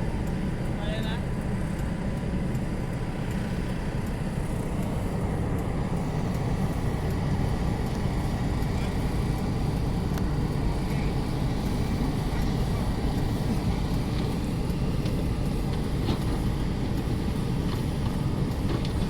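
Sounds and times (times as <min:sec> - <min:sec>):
car engine rumble: 0:00.0 - 0:19.0.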